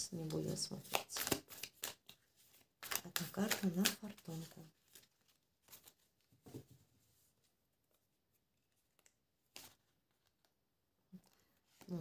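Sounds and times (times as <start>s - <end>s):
cards rustling: 0.8s - 6.3s, 7.8s - 10.6s.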